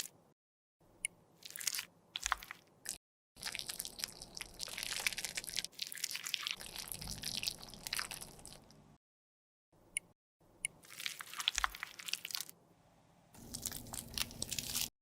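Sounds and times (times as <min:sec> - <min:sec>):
crunching and scraping cosmetic product: 0:01.4 - 0:08.6, 0:10.8 - 0:12.6, 0:13.4 - 0:14.9.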